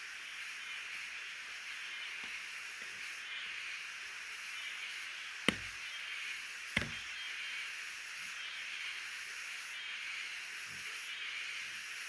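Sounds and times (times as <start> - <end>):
sharp knocks: 5.5 - 5.8, 6.8 - 7.0.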